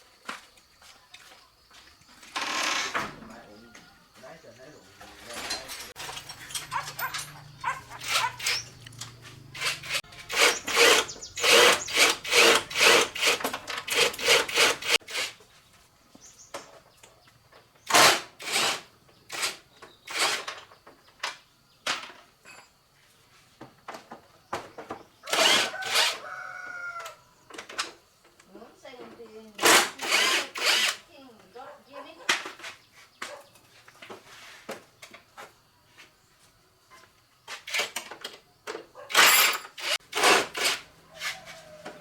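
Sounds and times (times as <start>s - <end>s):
hand tool rasping and scraping: 5.3s - 15.4s, 25.3s - 26.2s, 29.6s - 31.0s, 39.1s - 42.0s.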